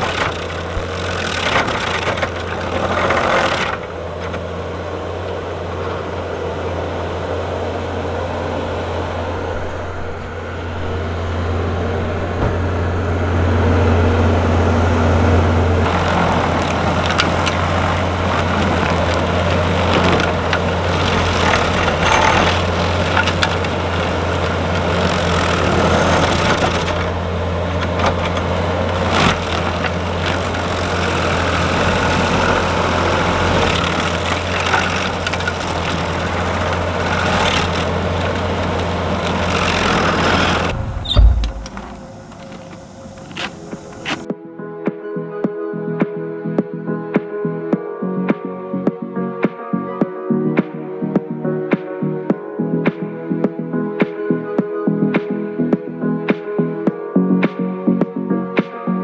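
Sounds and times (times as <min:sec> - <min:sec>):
skid steer engine running: 0:00.0 - 0:44.3
stump grinder cutting wood: 0:00.0 - 0:44.3.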